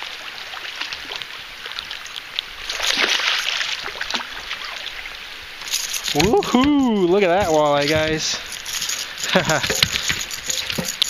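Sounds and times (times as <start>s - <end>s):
fish thrashing and water splashing: 0.0s - 11.0s.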